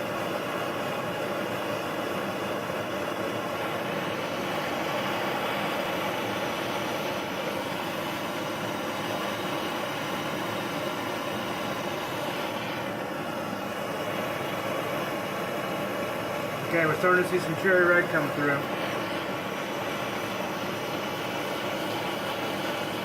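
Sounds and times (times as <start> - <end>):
gas torch flame rushing: 0.0 - 23.0.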